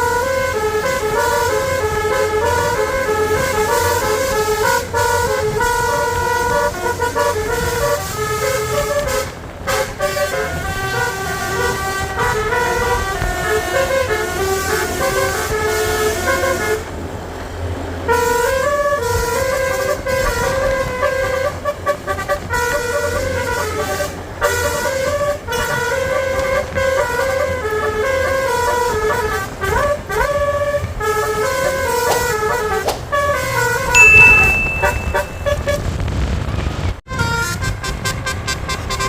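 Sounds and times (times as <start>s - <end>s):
multi-tone bus horn melody: 0.0s - 36.0s, 37.1s - 39.0s
loud high steady tone: 34.0s - 35.7s.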